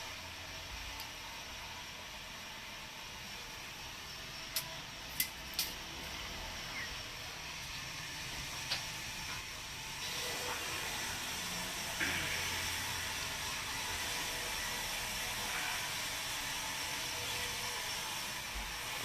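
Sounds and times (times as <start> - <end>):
band saw running: 5.8 - 19.0.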